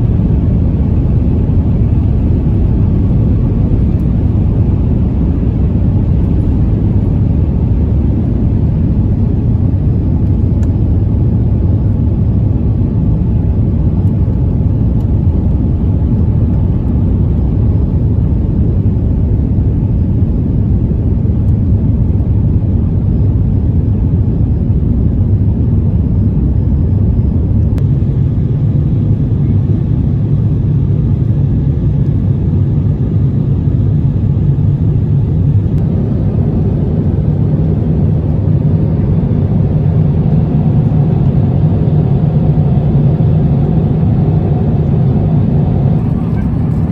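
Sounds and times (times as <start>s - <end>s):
jet engine cabin rumble: 0.0s - 46.9s.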